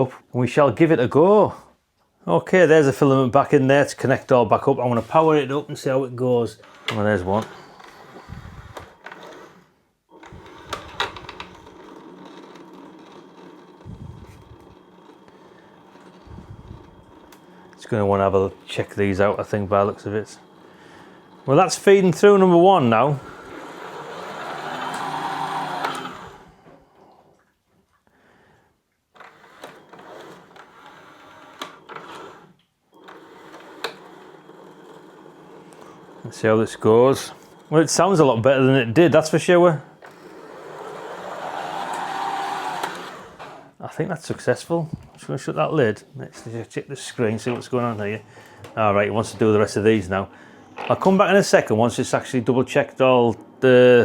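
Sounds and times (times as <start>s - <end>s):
filament feed motor running: 6.6s - 27.0s, 29.2s - 39.3s, 39.9s - 43.7s.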